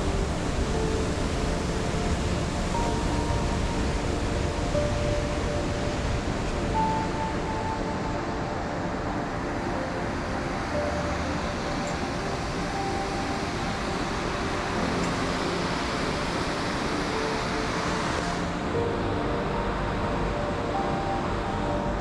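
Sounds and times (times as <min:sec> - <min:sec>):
river rushing: 0:00.0 - 0:22.0
soft background music: 0:00.0 - 0:22.0.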